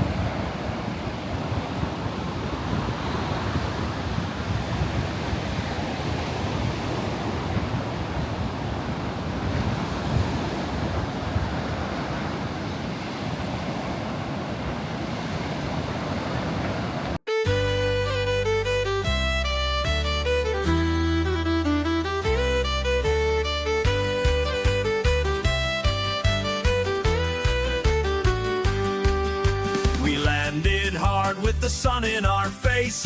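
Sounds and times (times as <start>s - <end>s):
surf breaking on beach: 0.0s - 17.2s
wind gusts on microphone: 0.0s - 17.2s.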